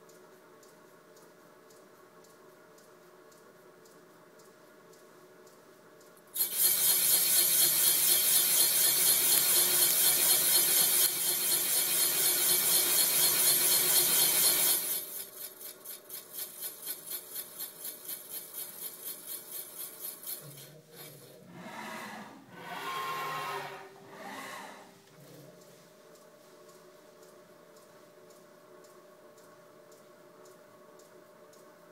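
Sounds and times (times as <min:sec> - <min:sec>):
machine tool cutting metal: 0:06.4 - 0:24.7.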